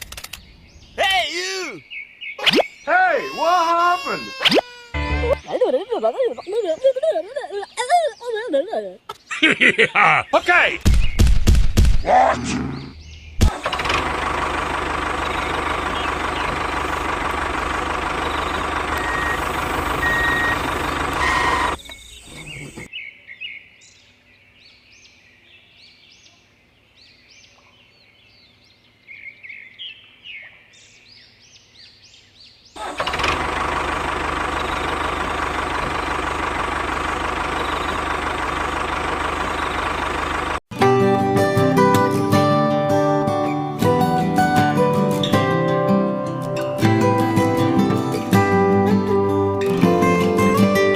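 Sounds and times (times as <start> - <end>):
birds chirping: 0.2 - 13.6, 14.2 - 33.0, 34.0 - 40.6.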